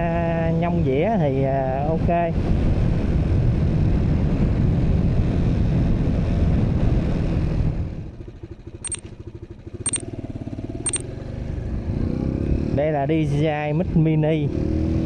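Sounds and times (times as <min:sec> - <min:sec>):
motorbike engine: 0:08.3 - 0:12.7.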